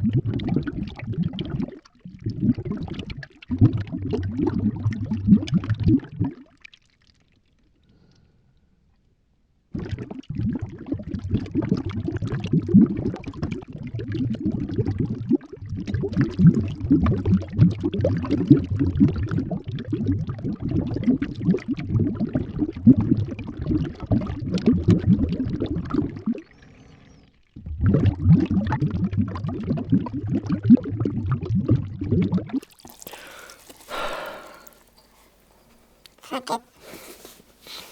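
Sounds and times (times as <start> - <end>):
muffled underwater bubbling: 27.7 - 35.3.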